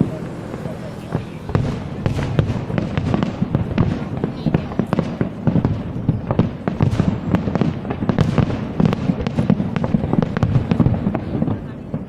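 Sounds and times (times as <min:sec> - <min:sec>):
low rumble: 0:00.0 - 0:04.6
fireworks crackling bangs: 0:00.0 - 0:12.0.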